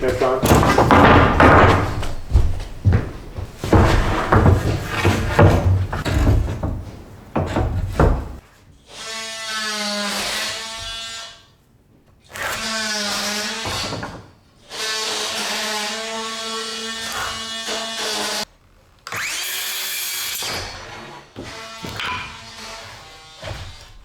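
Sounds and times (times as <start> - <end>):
knocking and clattering: 0.0 - 8.4.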